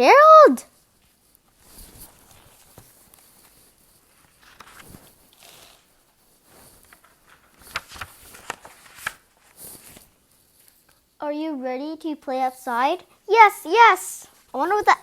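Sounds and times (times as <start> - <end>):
soft rustling: 0.7 - 11.2.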